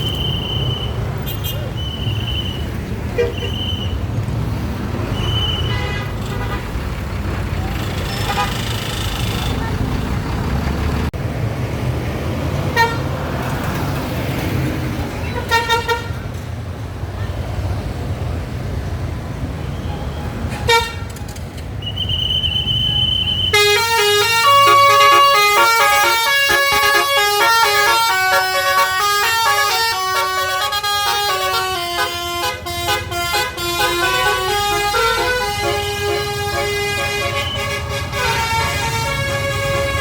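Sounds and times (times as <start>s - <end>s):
low traffic rumble: 0.0s - 40.0s
bus horn playing multi-note tune: 12.8s - 13.0s, 15.3s - 16.2s, 20.7s - 21.1s, 23.5s - 40.0s.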